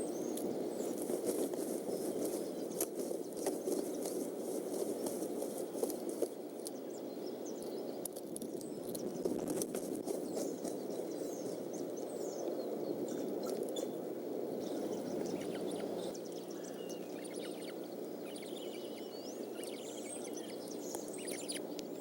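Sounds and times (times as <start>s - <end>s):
steady rain hiss: 0.0s - 7.0s
birds chirping: 0.0s - 22.0s.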